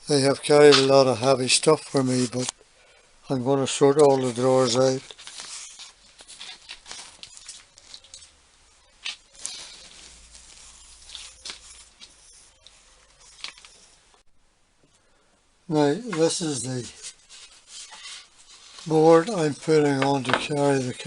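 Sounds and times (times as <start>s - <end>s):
objects tapping and scraping on workbench: 20.0s - 20.6s.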